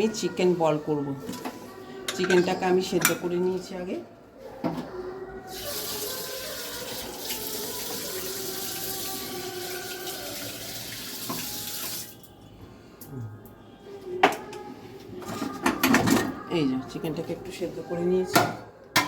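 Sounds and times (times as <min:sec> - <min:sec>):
water running from tap: 0:05.5 - 0:12.3.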